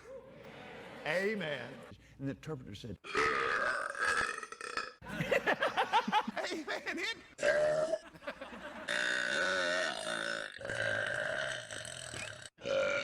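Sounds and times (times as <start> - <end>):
man belching: 3.1 - 5.0, 7.4 - 8.0, 8.9 - 13.0.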